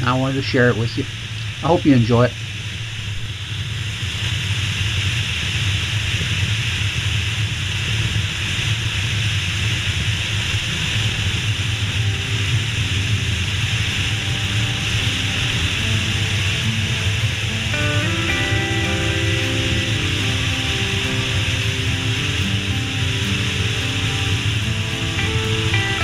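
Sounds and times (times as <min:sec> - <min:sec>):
motorcycle engine and road drone: 0:00.0 - 0:26.0
wind rushing over microphone: 0:00.0 - 0:26.0
faint music: 0:11.6 - 0:26.0.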